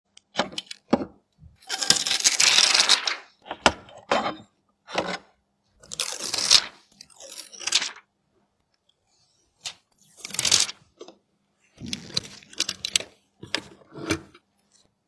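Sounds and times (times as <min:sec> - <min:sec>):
packaging crinkling and tearing: 0:05.8 - 0:08.0.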